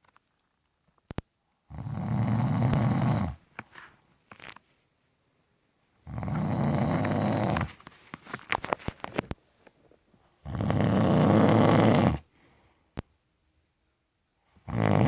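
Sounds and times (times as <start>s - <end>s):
man snoring: 1.7s - 3.4s, 6.0s - 7.8s, 10.4s - 12.3s, 14.6s - 15.0s.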